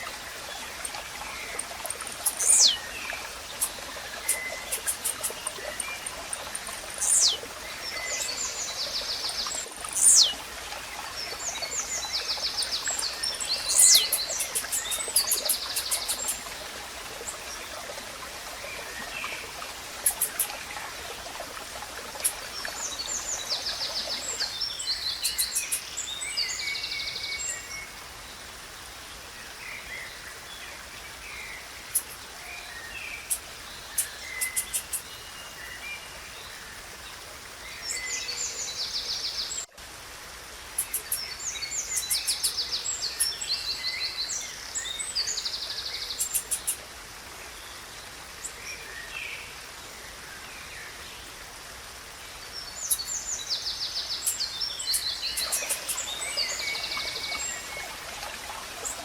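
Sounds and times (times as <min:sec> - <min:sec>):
songbirds chipping and trilling: 0:00.0 - 0:17.9, 0:18.7 - 0:27.9, 0:29.8 - 0:37.2, 0:40.7 - 0:46.8, 0:52.5 - 0:58.0
background hiss: 0:00.0 - 0:59.0.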